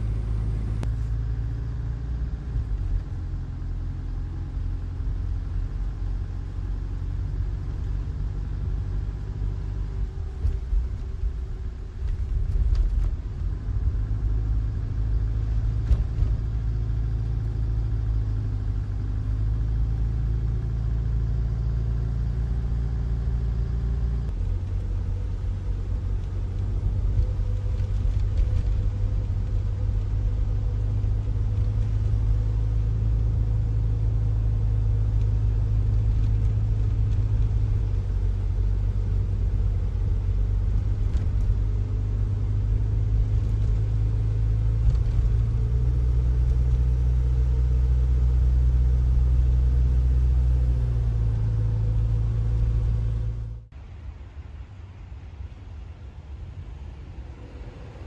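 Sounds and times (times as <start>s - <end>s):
vehicle engine and road rumble: 0.0s - 58.0s.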